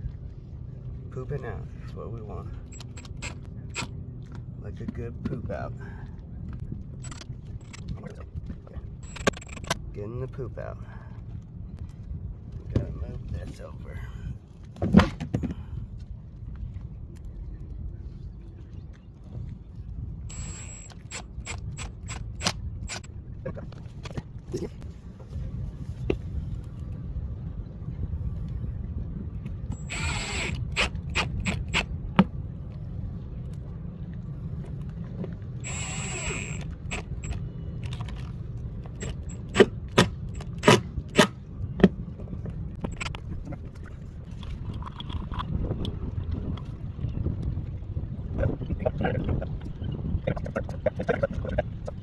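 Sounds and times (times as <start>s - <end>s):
low rumble: 0.0s - 52.0s
tools clicking and scraping: 2.7s - 3.9s, 7.0s - 8.0s, 9.0s - 9.8s.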